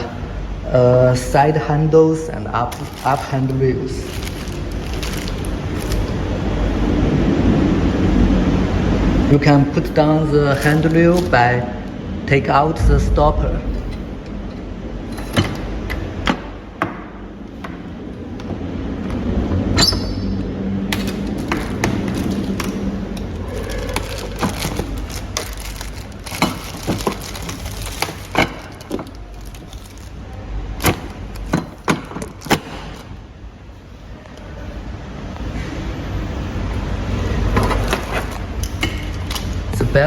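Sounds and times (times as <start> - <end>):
low steady hum: 0.0 - 32.4.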